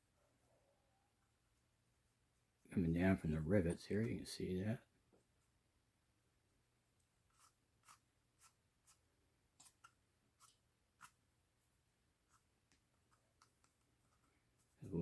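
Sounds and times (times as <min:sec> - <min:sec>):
brush rubbing on cardboard tube: 0:10.4 - 0:11.2.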